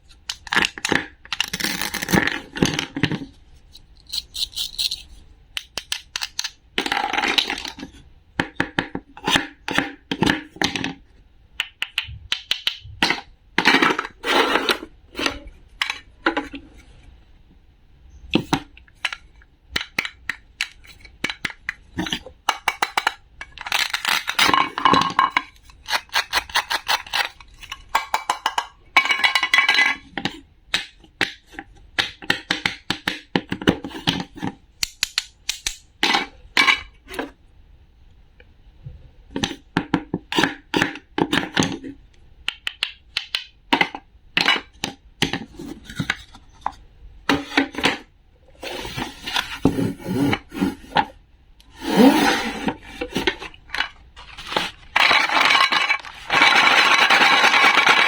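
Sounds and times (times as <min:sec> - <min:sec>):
small hard objects clicking and clinking: 0:55.0 - 0:58.0.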